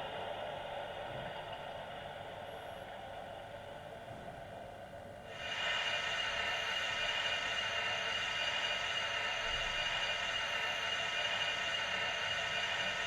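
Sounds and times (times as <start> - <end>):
steam hiss from small loudspeaker: 5.3 - 13.0.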